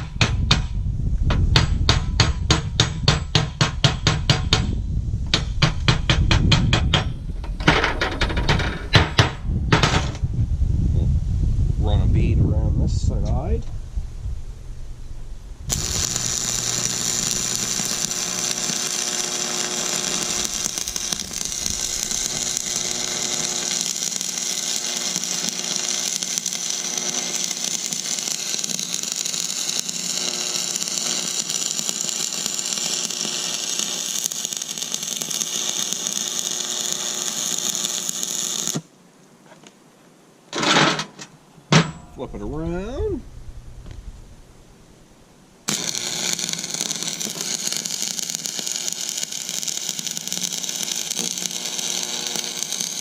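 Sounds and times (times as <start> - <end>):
welding arc crackling: 15.6 - 38.9, 45.6 - 53.0.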